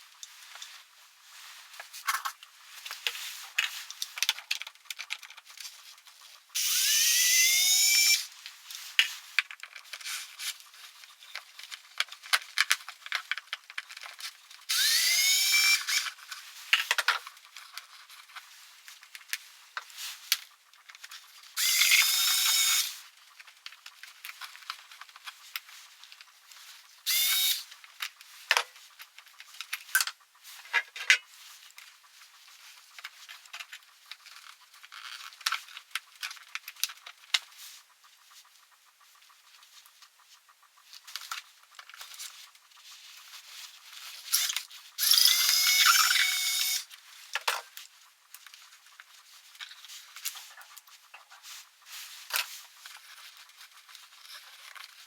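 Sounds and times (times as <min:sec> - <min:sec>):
electric drill whirring: 0:06.6 - 0:08.3, 0:14.7 - 0:16.2, 0:21.6 - 0:23.0, 0:27.1 - 0:27.7, 0:44.3 - 0:46.9.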